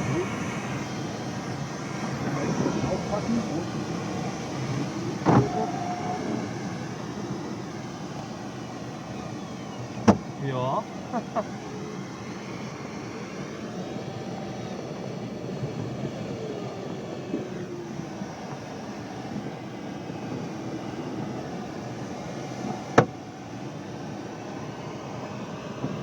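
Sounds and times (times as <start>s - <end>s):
faint sliding tones: 0.0s - 10.4s
rushing airflow in cockpit: 0.0s - 26.0s.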